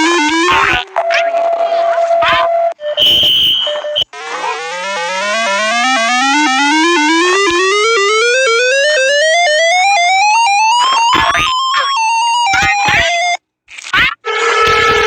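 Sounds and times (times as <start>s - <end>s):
brief steady tones: 0.0s - 10.8s
synthesized alarm tone rising: 0.0s - 13.4s.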